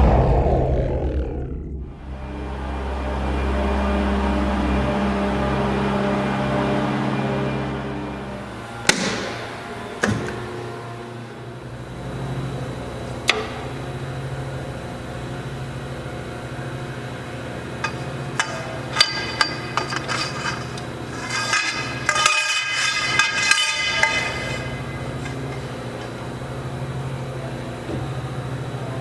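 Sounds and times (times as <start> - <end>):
band saw humming: 1.2 - 29.0
ringing metallic clanks: 17.8 - 26.3.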